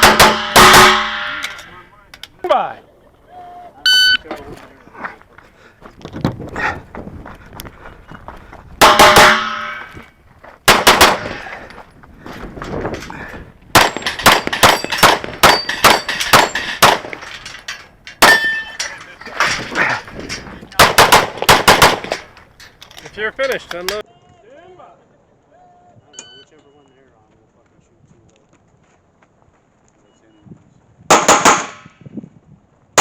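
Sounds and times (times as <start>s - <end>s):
rapid pistol shots: 0.0s - 1.3s, 10.7s - 11.4s, 13.8s - 17.1s, 20.8s - 22.2s, 31.1s - 31.8s
steel plates ringing when hit: 0.0s - 1.7s, 18.2s - 19.0s.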